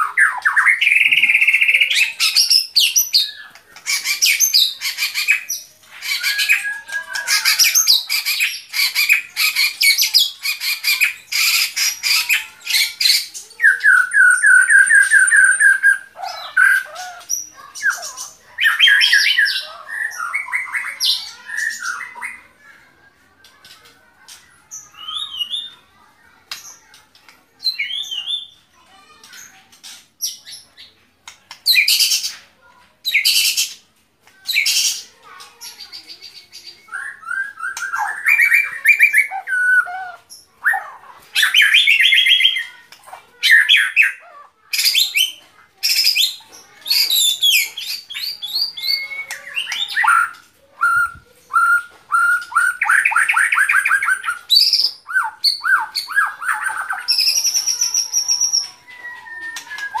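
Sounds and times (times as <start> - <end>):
bird singing: 0.0 - 22.4, 47.0 - 60.0.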